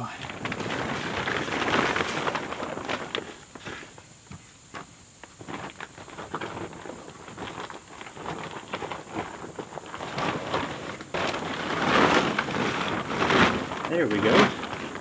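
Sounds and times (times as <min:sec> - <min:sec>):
plastic tarp crackling and rustling: 0:00.0 - 0:15.0.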